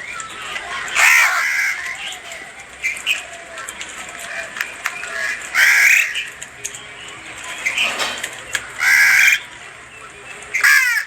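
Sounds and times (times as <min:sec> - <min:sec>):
harsh bird calls: 0:00.0 - 0:11.0.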